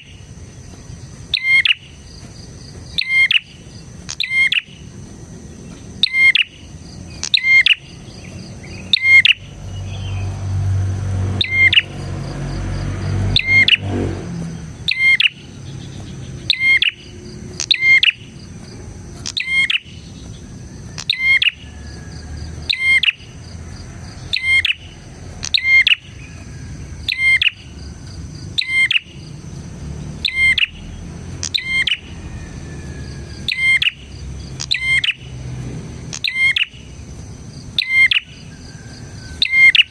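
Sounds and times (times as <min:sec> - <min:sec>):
bird chirping call: 0:00.0 - 0:37.0, 0:37.6 - 0:39.9
high insect-like whine: 0:00.0 - 0:39.9.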